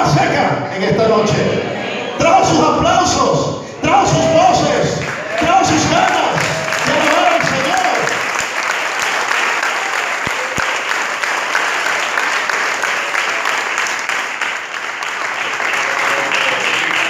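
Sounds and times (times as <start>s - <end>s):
crowd applauding: 3.8s - 17.0s.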